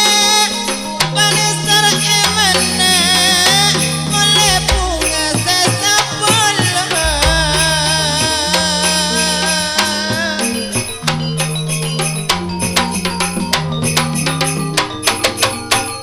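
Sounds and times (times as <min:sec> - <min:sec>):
rapid percussion strikes: 0:00.0 - 0:16.0
wavering melodic line: 0:00.0 - 0:16.0
sustained bass notes: 0:02.2 - 0:05.7, 0:07.0 - 0:10.4.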